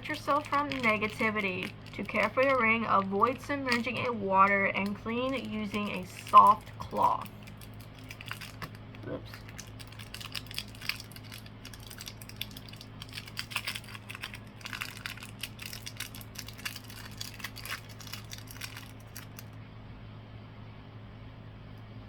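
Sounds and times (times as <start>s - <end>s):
packaging crinkling and rustling: 0.0s - 19.6s
steady low hum: 0.0s - 22.0s.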